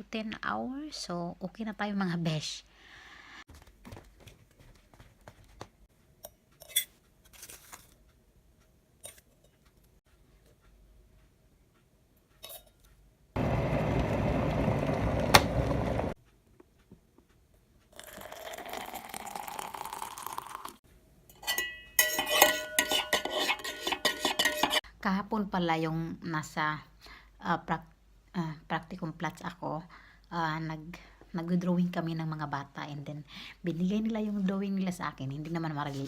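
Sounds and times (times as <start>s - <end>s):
crockery and cutlery clinking: 12.4s - 12.9s, 21.3s - 24.8s
dishes clicking and clinking: 12.4s - 13.0s, 21.3s - 24.8s.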